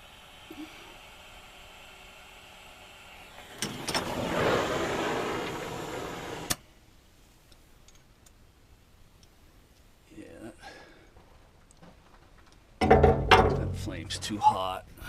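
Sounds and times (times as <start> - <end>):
cutting torch hissing: 0.0 - 6.6
torch oxygen rushing blast: 3.0 - 6.6.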